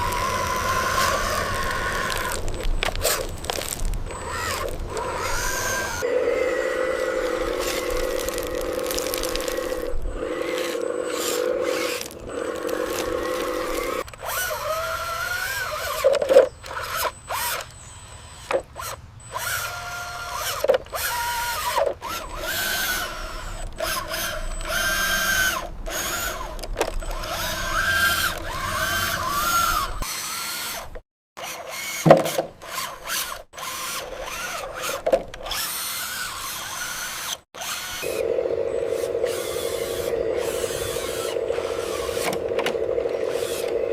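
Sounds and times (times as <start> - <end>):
small electric motors whining: 0.0 - 43.9
sharp knocks: 32.0 - 32.6.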